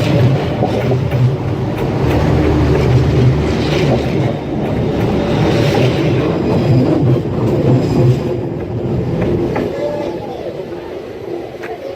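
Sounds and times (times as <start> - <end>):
train wheels rumbling on rails: 0.0 - 11.9.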